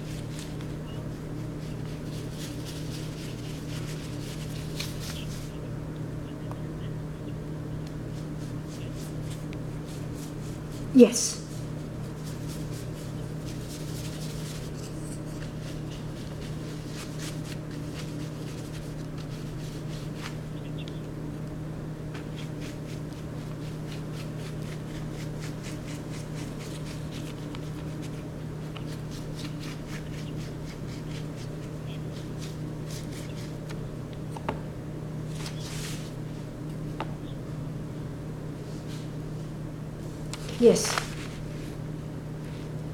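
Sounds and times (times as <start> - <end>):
paint scrubbing and scraping: 0.0 - 5.6, 11.6 - 20.4, 22.2 - 33.8, 35.4 - 36.2
steady low hum: 0.0 - 42.9.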